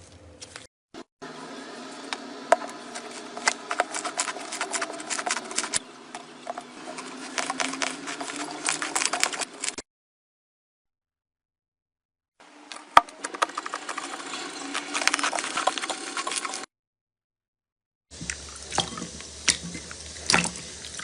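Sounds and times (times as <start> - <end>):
hands squishing slime: 2.9 - 5.8, 6.8 - 9.8.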